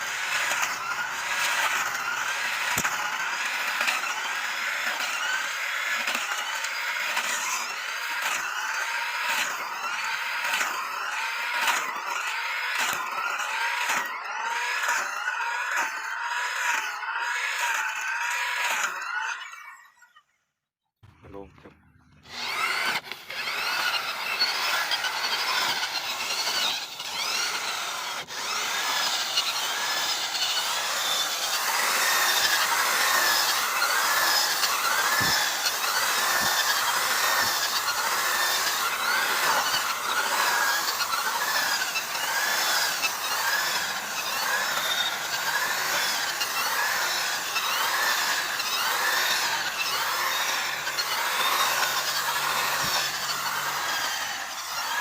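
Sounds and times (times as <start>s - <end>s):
back-and-forth sawing: 0.0s - 20.2s, 21.1s - 55.0s.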